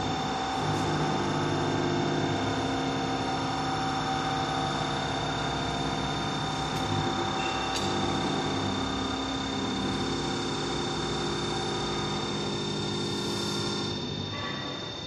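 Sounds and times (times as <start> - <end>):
press machine humming: 0.0 - 15.0.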